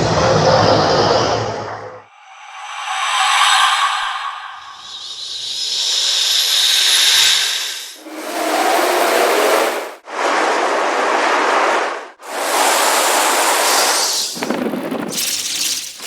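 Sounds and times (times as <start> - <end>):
rising hiss: 2.4 - 16.0
blasts of rasping noise: 3.8 - 16.0.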